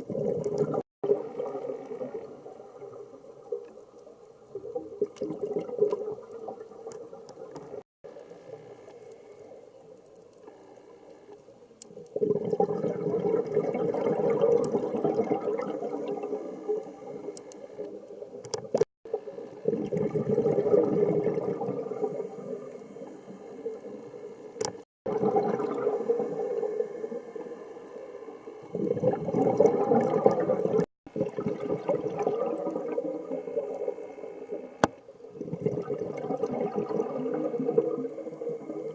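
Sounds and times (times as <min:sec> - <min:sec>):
bubbles gurgling underwater: 0:00.0 - 0:03.8, 0:04.5 - 0:07.8, 0:12.0 - 0:16.8, 0:18.3 - 0:22.0, 0:25.1 - 0:26.8, 0:28.6 - 0:38.9.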